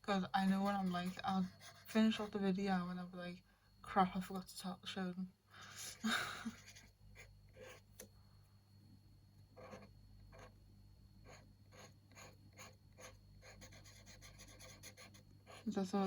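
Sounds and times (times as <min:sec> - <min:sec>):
pen scratching on paper: 0:00.5 - 0:02.3, 0:06.6 - 0:07.8, 0:09.6 - 0:10.6, 0:11.2 - 0:15.8.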